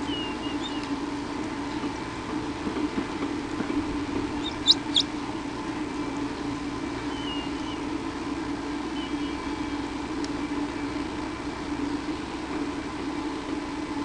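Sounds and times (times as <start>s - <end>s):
animal squeaking: 0.0s - 0.9s, 4.2s - 5.1s
low electrical hum: 0.0s - 14.0s
faint chirps: 4.4s - 5.1s.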